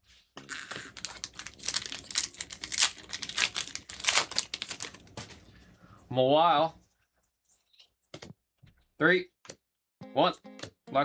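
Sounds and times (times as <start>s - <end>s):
foil wrapper crinkling and tearing: 0.4s - 5.6s.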